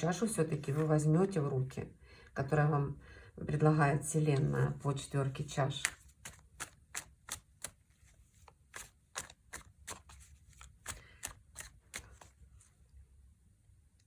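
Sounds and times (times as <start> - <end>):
cards being shuffled by hand: 0.6 - 1.0, 4.4 - 12.8.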